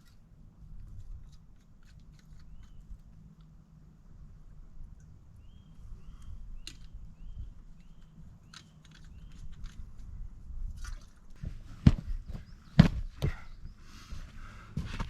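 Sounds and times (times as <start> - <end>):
light clicks and crackles: 7.6 - 10.1
heavy thud: 11.5 - 13.4.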